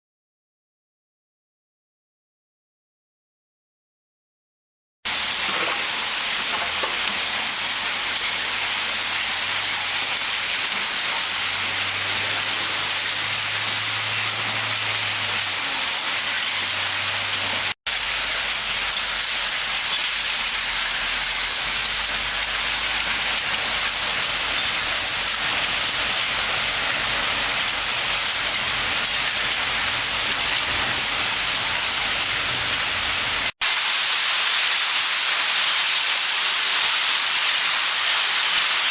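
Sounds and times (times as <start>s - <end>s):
material showering through screen: 5.1s - 38.9s
screening separator running: 5.2s - 32.5s.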